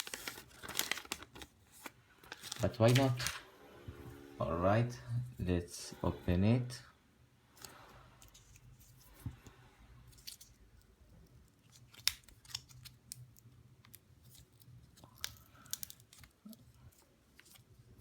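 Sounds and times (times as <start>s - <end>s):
package clicks and crinkles: 0.0s - 3.4s, 11.5s - 17.7s.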